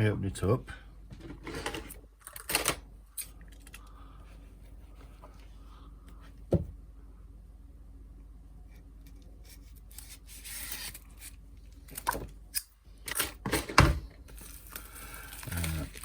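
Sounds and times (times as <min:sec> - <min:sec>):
wrapping rustling: 0:14.3 - 0:16.0.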